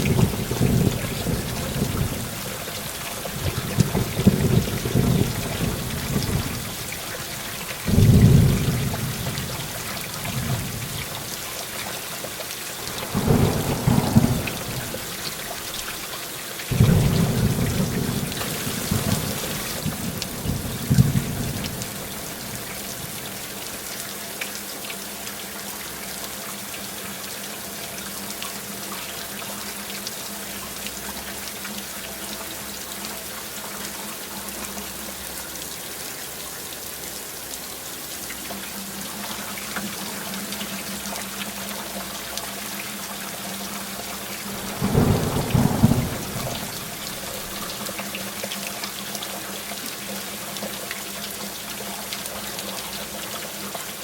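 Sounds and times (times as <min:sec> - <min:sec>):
heavy rain: 0:00.0 - 0:54.0
thunder rumble: 0:13.0 - 0:15.2, 0:44.5 - 0:47.6.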